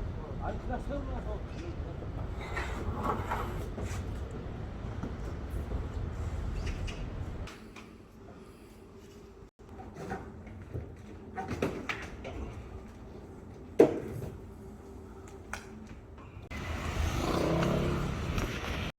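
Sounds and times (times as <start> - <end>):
knocks and clatter of work: 9.6 - 14.6.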